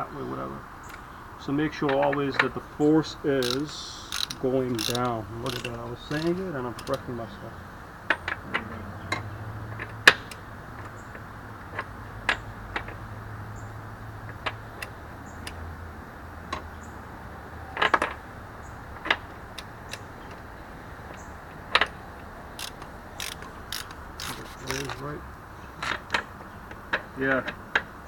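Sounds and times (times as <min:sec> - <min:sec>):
ratcheting torque wrench clicks: 0:03.4 - 0:07.2, 0:14.3 - 0:15.6, 0:19.1 - 0:20.4, 0:21.1 - 0:25.2.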